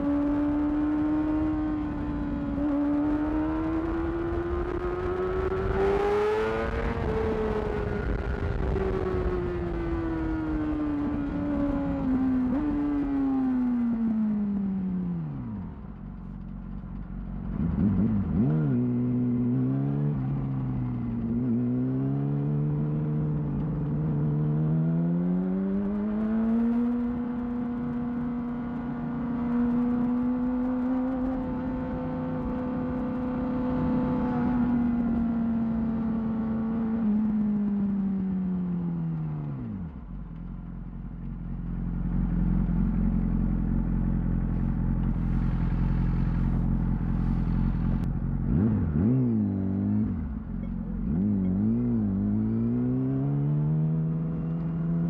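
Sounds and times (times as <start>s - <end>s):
motorcycle engine: 0.0s - 55.0s
motorcycle throttle blips: 39.0s - 54.8s.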